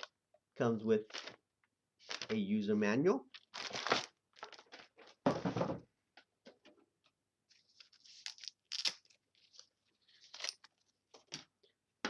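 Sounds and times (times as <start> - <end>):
packaging crinkling and rustling: 1.0 - 1.4, 2.0 - 2.4, 3.3 - 5.2, 7.6 - 11.4.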